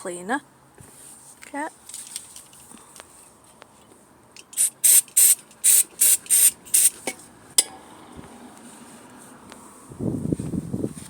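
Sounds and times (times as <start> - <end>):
aerosol spray hiss: 4.6 - 6.9.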